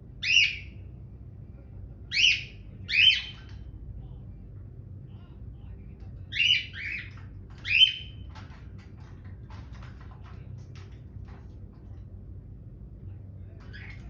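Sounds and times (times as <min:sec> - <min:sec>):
cockatiel chirping squawks: 0:00.2 - 0:00.7, 0:02.1 - 0:03.4.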